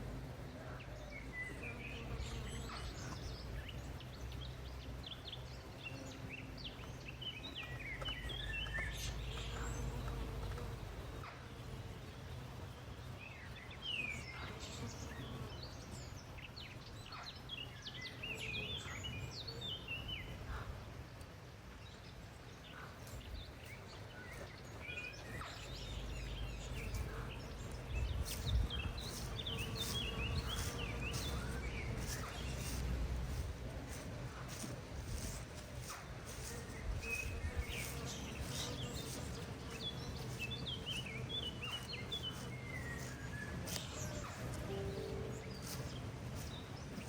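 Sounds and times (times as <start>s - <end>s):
small birds chirping: 0.0s - 47.0s.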